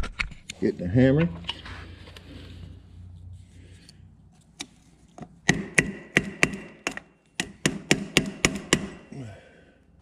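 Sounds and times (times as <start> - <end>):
hammer striking metal: 5.5 - 9.1.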